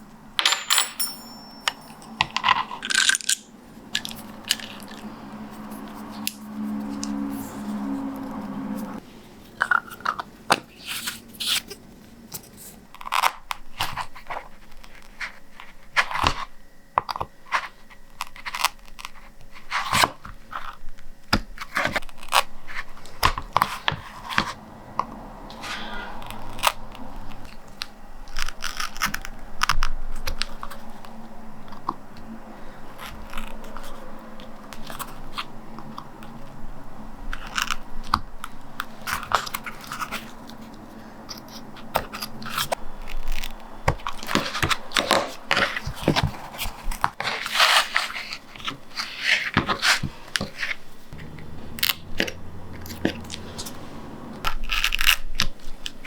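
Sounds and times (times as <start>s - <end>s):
tools tapping and scraping on table: 0.4s - 2.8s.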